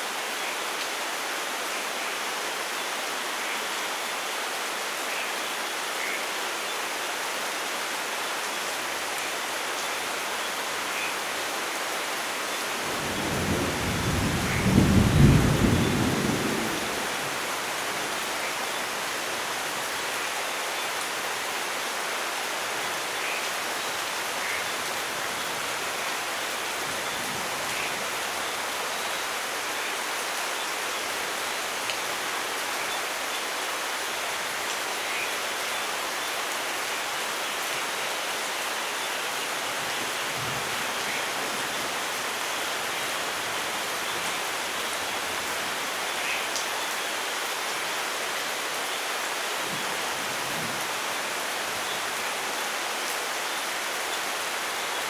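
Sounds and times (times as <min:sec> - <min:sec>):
rain hissing: 0:12.0 - 0:19.9.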